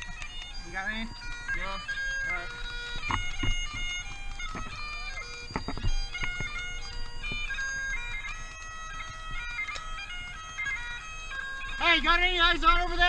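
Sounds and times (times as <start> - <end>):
bagpipe music: 0.0 - 13.0
sharp knocks: 3.0 - 7.7.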